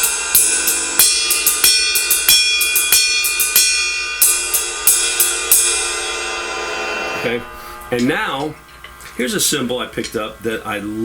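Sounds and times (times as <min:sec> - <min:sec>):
ride cymbal struck with drumstick: 0:00.0 - 0:08.7.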